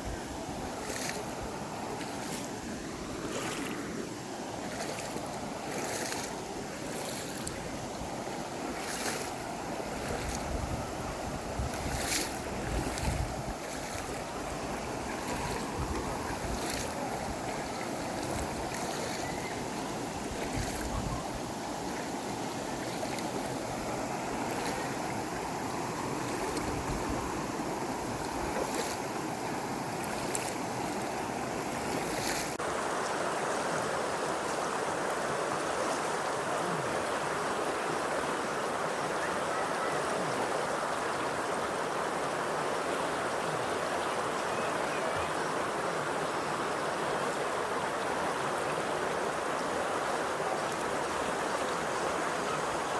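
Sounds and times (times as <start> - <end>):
steady rush of water: 0.0 - 52.9
waves washing on shore: 0.0 - 52.9
wind buffeting microphone: 8.9 - 22.0.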